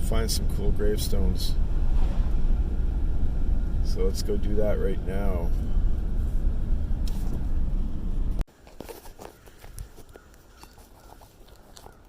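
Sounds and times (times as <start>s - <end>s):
car road rumble: 0.0s - 8.5s.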